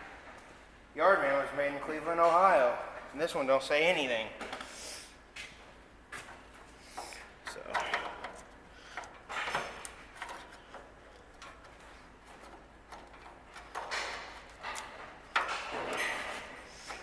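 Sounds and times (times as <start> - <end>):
small parts rustling and knocking: 6.2 - 17.0.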